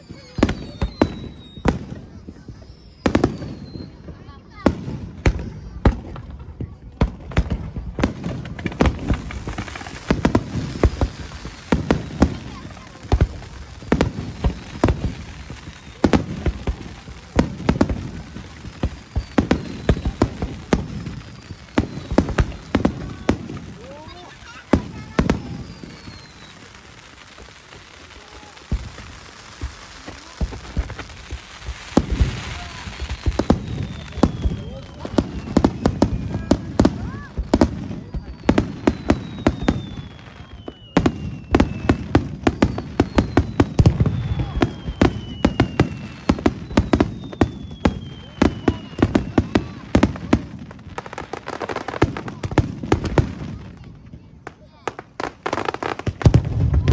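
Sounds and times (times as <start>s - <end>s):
descending firework whistle: 0.0s - 4.6s, 8.9s - 52.4s
fireworks bursting: 0.0s - 56.9s
firework shells bursting: 28.7s - 50.8s.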